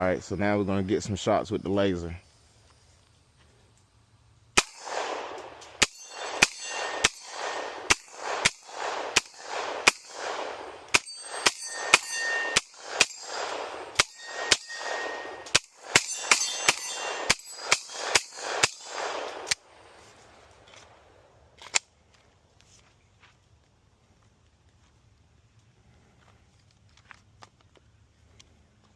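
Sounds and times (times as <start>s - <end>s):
airsoft gun shots: 4.6s - 19.6s
brief metallic ring: 11.0s - 12.6s.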